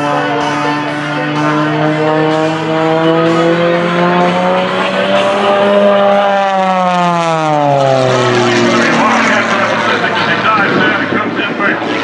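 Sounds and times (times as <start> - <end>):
propeller plane engine: 0.0 - 12.0.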